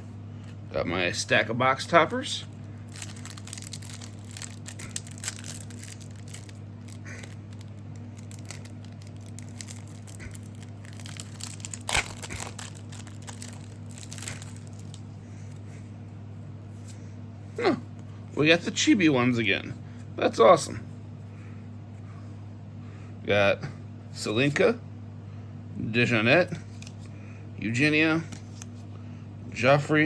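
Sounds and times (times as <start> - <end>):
steady low hum: 0.0 - 30.0
packaging crinkling and tearing: 2.5 - 15.1, 26.7 - 27.1.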